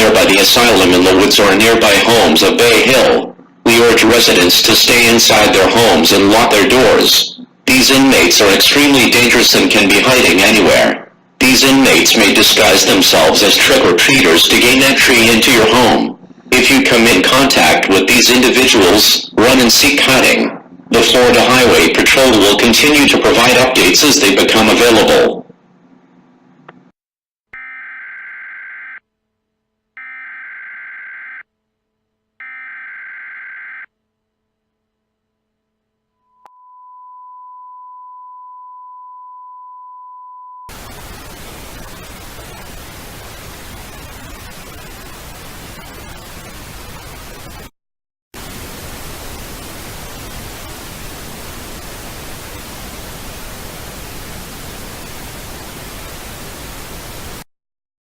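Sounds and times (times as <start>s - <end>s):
tv static hiss: 0.0s - 25.7s, 40.7s - 47.7s, 48.4s - 57.5s
steady beep tone: 36.3s - 40.8s
warbling digital data tones: 40.7s - 47.7s.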